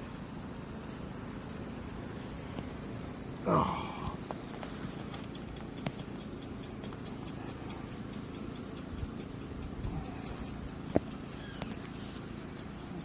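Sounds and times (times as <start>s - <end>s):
fast high ticking: 0.0s - 13.0s
bees buzzing: 0.1s - 13.0s
hive clicks: 4.1s - 13.0s.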